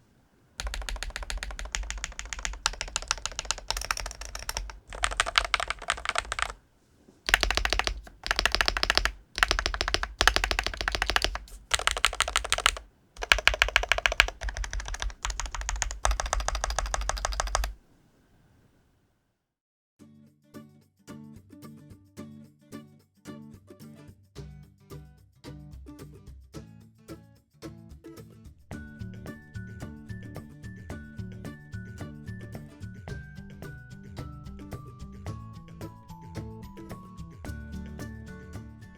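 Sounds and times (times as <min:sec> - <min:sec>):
fast keyboard typing: 0:00.6 - 0:06.6, 0:07.3 - 0:17.8.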